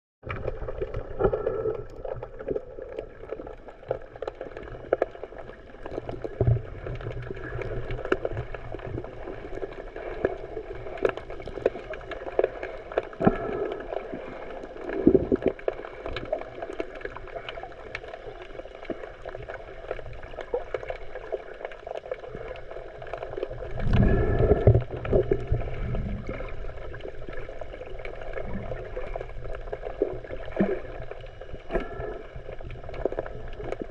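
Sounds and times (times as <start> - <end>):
gurgling water surges: 0.2 - 33.9.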